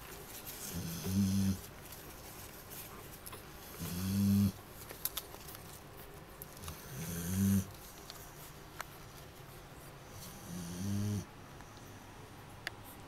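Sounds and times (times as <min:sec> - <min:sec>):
puppy snoring: 0:00.6 - 0:01.7, 0:03.6 - 0:04.6, 0:06.6 - 0:07.8, 0:10.1 - 0:11.3.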